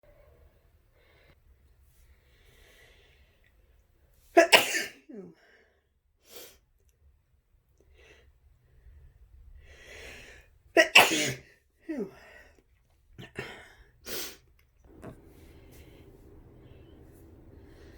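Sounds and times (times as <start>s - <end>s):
faint breathing: 0.1s - 3.6s, 7.9s - 10.6s, 13.5s - 17.9s
person sneezing: 4.4s - 5.3s, 10.8s - 12.2s.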